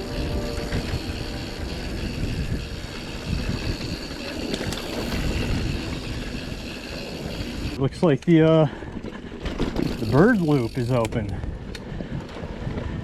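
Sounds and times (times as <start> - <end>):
bike tyres rumbling on trail: 0.0 - 13.0
bike rattling and knocking: 0.1 - 13.0.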